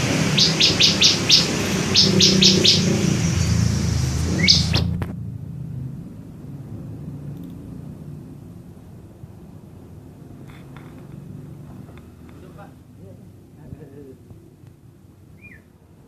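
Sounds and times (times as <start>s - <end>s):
bird chirping: 0.0s - 5.0s, 15.3s - 15.8s.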